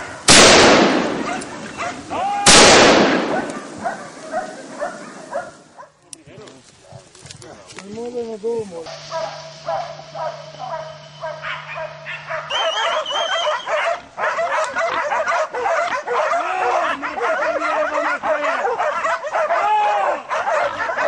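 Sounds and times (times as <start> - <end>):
dogs barking and yelping: 1.1 - 2.2, 3.3 - 6.0, 8.9 - 21.0.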